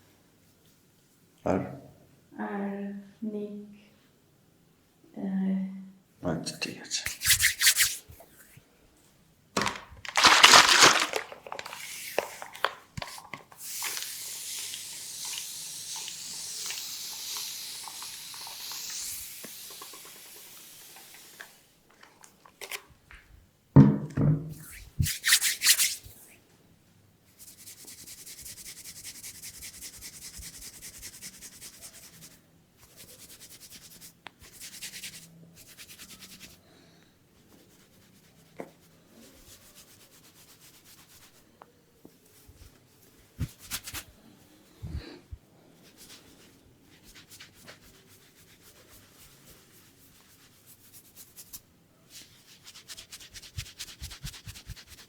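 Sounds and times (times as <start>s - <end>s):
hands rubbing hair and scalp: 7.0s - 8.5s, 10.0s - 21.6s, 24.6s - 26.3s, 27.4s - 36.6s, 37.5s - 41.4s, 42.4s - 44.2s, 45.8s - 55.0s.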